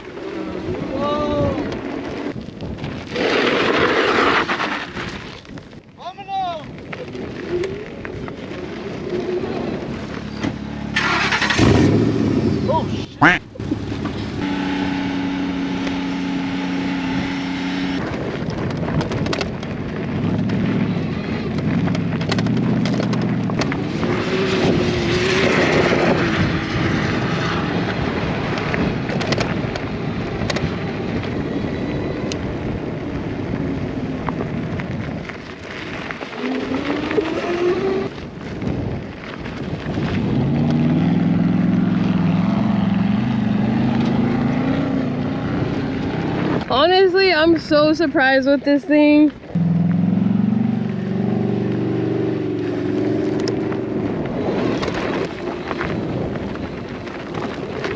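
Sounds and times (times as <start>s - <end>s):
rushing wind: 0.0s - 57.9s
off-road vehicle engine revving: 8.9s - 18.3s, 20.1s - 32.9s, 36.2s - 38.2s, 40.1s - 48.9s, 49.5s - 56.0s.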